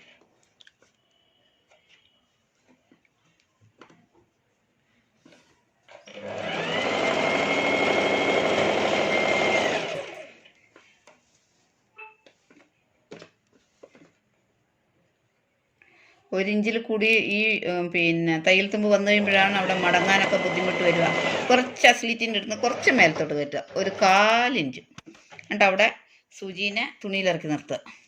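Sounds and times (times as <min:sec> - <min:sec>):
sewing machine stitching: 0:05.9 - 0:10.5, 0:18.8 - 0:24.5.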